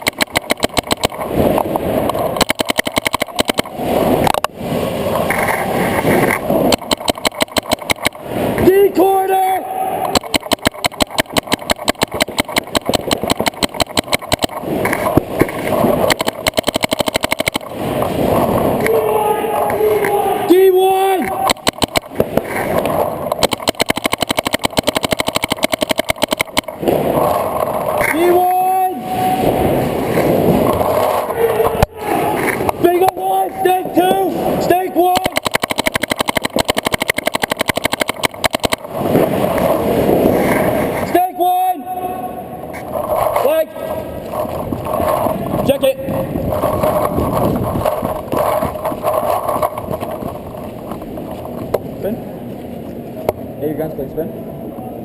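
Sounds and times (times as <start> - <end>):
paintball markers firing: 0.0 - 3.7, 6.1 - 8.2, 10.0 - 17.8, 21.2 - 28.4, 34.9 - 39.0
steady rushing noise: 0.0 - 55.0
rustling haze: 42.7 - 53.3.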